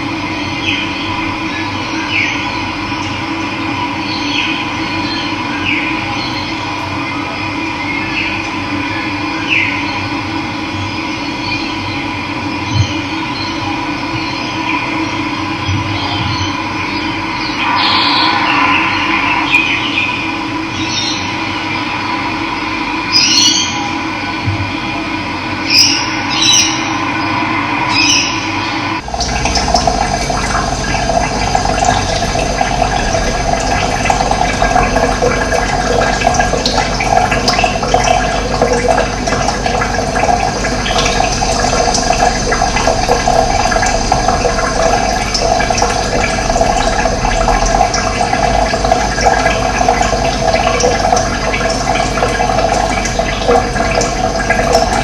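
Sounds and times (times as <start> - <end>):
running water: 15.6 - 21.5, 29.0 - 55.0.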